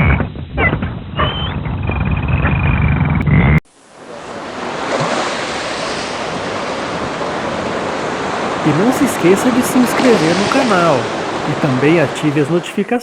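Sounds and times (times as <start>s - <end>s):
dolphin whistles and chirps: 0.0s - 1.6s
ocean waves hissing: 3.7s - 13.0s.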